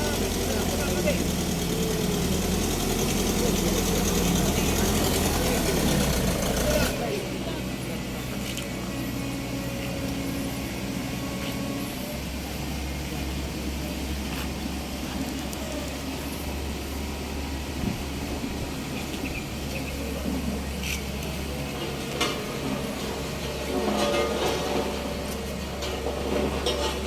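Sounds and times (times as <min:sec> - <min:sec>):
vehicle engine idling: 0:00.0 - 0:27.0.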